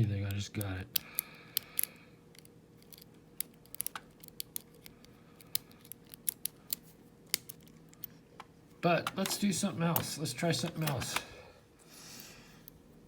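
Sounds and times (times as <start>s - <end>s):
lock pick metallic clicks: 0.9s - 8.1s.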